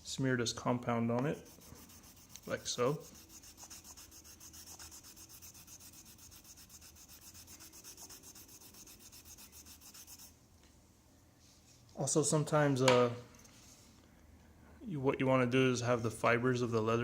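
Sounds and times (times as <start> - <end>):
compound rubbing on leather strop: 1.3 - 10.3.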